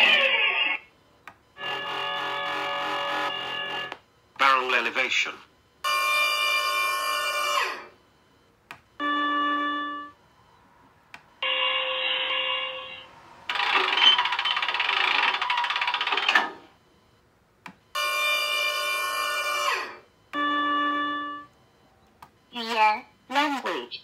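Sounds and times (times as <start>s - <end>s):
electronic beeping tones: 17.8s - 24.0s.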